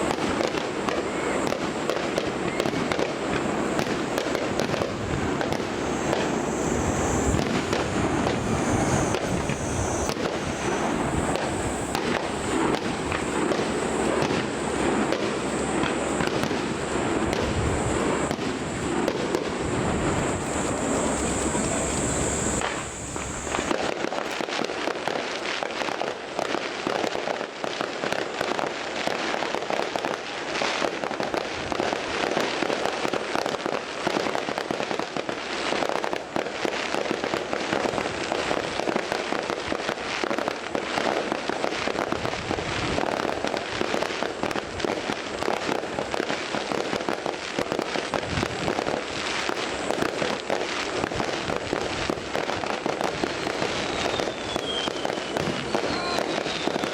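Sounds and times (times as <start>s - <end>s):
fireworks crackling: 0.0s - 56.9s
thin high whistle: 0.9s - 1.6s, 2.3s - 3.0s, 5.5s - 12.6s, 19.5s - 23.8s, 53.2s - 56.9s.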